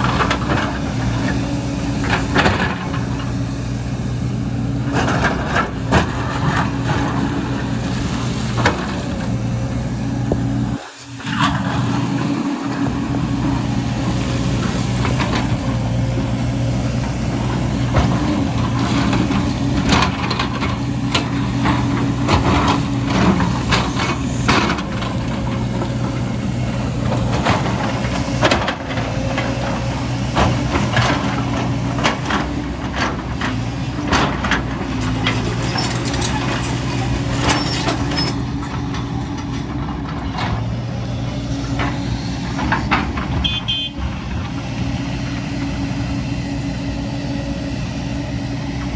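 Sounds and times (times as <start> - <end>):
excavator diesel engine running: 0.0 - 48.9.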